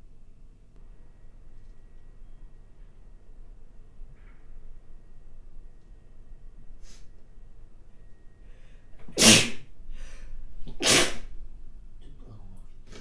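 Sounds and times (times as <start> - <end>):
woman sneezing: 9.2 - 9.6, 10.8 - 11.2.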